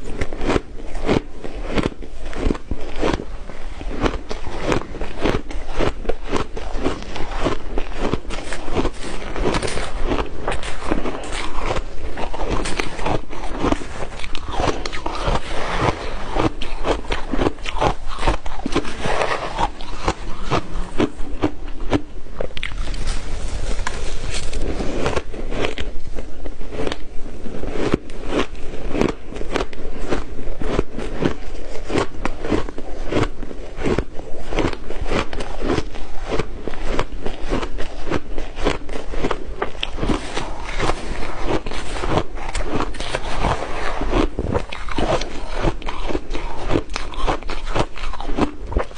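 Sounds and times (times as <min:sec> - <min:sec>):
ice crunching while chewed: 0:00.0 - 0:48.9.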